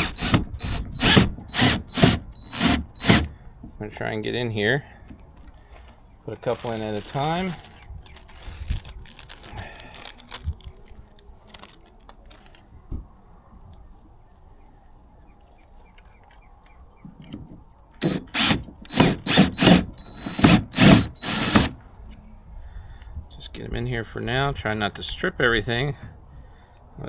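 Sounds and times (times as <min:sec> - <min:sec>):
cordless drill whine: 0:00.0 - 0:03.3, 0:18.0 - 0:21.8.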